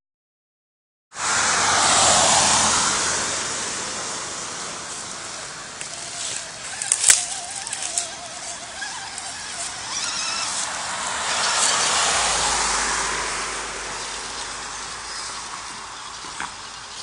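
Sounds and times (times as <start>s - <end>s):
broad rush of noise: 1.2s - 17.0s
toy car motor and gears whining: 4.8s - 12.9s.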